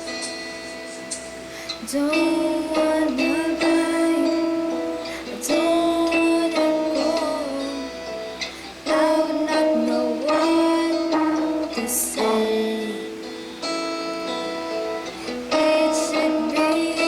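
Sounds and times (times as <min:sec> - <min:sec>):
plucked strings: 0:00.0 - 0:17.0
woman singing pop song: 0:01.5 - 0:13.8, 0:15.0 - 0:17.0.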